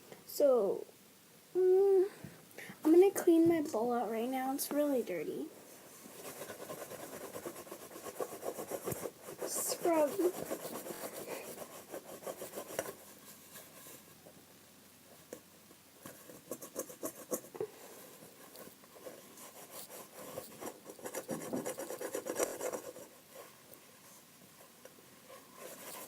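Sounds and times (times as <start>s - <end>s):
bowl being scrubbed by hand: 5.7s - 14.1s.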